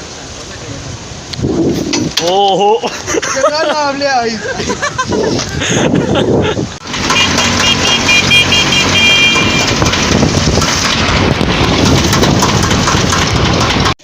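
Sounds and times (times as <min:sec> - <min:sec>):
road traffic noise: 0:00.0 - 0:14.0
low engine hum: 0:06.8 - 0:14.0.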